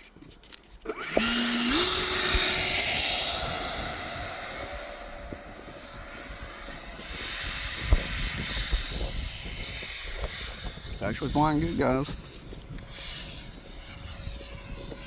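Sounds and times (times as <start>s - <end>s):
electric ducted fan whine: 0.8s - 15.0s.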